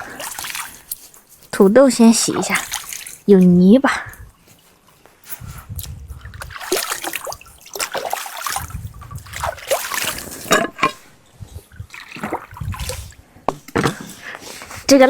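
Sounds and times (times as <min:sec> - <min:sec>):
potatoes splashing in water: 0:00.0 - 0:01.2, 0:01.8 - 0:03.6, 0:06.4 - 0:10.6, 0:11.8 - 0:13.2.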